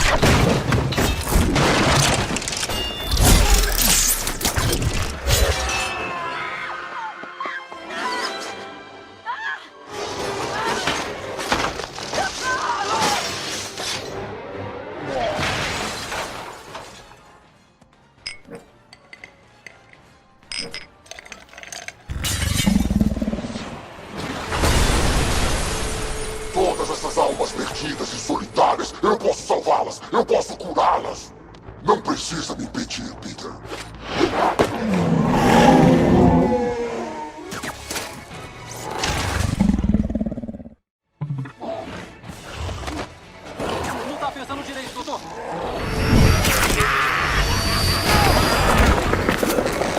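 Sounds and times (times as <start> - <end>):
music: 0.0 - 39.9, 41.0 - 49.9
deep growling creature roar: 34.8 - 37.4.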